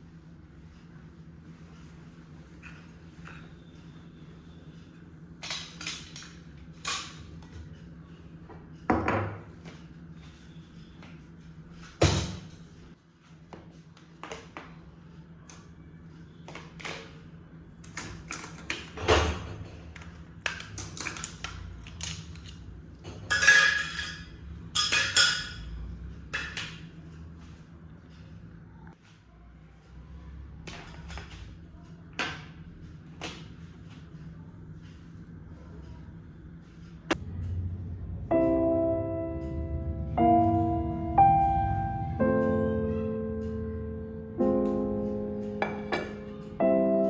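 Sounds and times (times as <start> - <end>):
steady low hum: 0.0 - 47.0
utensils and dishes clattering: 5.4 - 7.7, 11.9 - 12.8, 17.8 - 26.9, 45.5 - 46.6.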